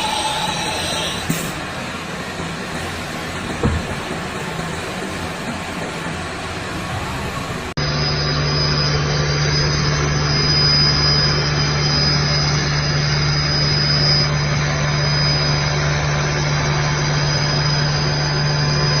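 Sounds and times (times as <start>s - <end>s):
high thin whine: 0.0s - 5.4s, 6.2s - 19.0s
machine humming: 0.0s - 19.0s.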